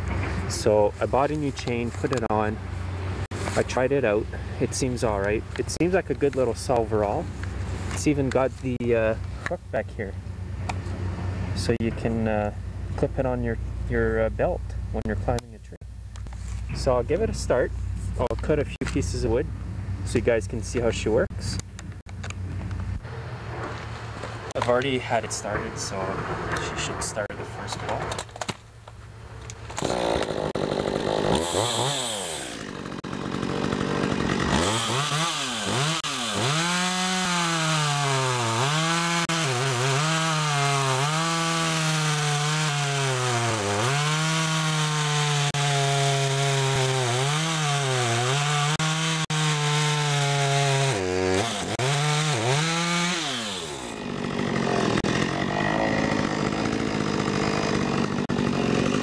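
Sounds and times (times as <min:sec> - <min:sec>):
chainsaw cutting wood: 0:29.3 - 0:59.0.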